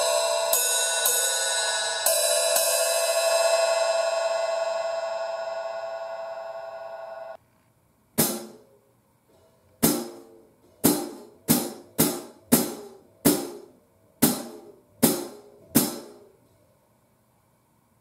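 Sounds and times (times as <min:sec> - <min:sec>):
hi-hat struck with stick: 0:00.0 - 0:05.8, 0:08.2 - 0:16.4.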